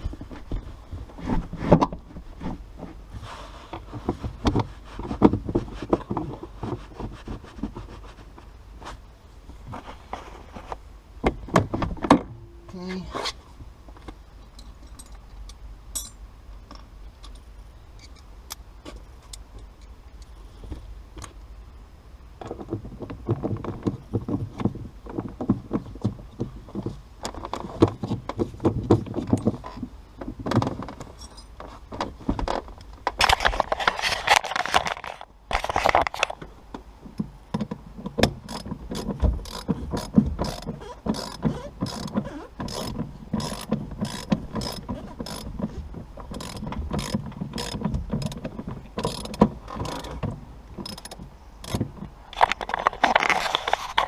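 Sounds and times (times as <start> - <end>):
tools clinking on metal: 14.6 - 16.2
ratchet wrench clicks: 42.7 - 45.5, 46.4 - 48.4.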